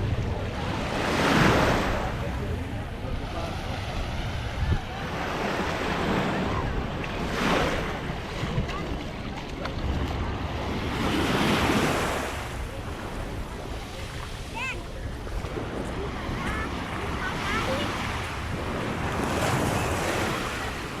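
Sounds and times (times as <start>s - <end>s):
small waves breaking on sand: 0.0s - 21.0s
wind rumbling on microphone: 1.6s - 14.4s.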